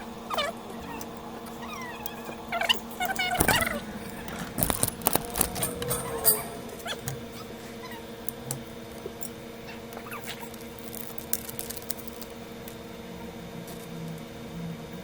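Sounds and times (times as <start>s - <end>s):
bench equipment hum: 0.0s - 9.6s
metal tools ticking and scraping: 2.7s - 7.1s.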